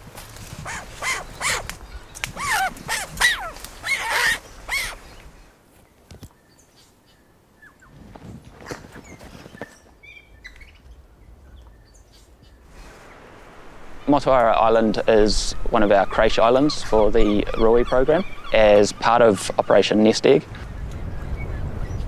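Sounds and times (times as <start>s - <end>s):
rustling: 0.0s - 7.0s, 7.9s - 10.0s
animal calling: 0.5s - 5.2s
faint bird chirps: 0.6s - 5.3s.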